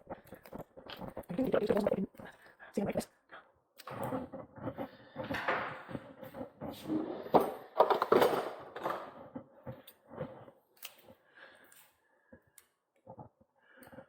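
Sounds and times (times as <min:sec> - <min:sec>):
hands working on a bicycle: 0:05.2 - 0:14.0.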